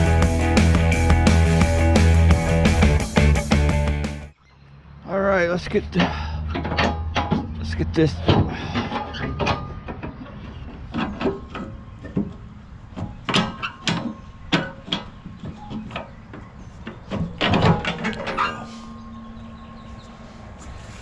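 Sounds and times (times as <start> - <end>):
steady low hum: 18.3 - 21.0.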